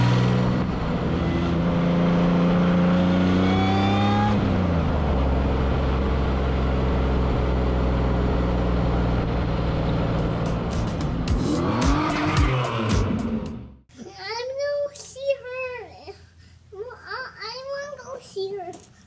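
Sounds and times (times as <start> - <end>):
car engine accelerating: 0.0 - 13.9.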